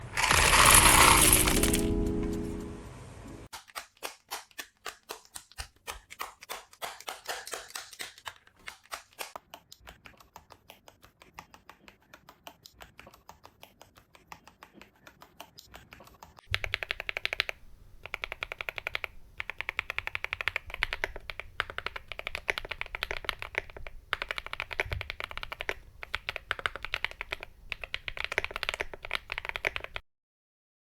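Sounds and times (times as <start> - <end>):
mechanical keyboard keystrokes clacking: 16.5 - 30.0.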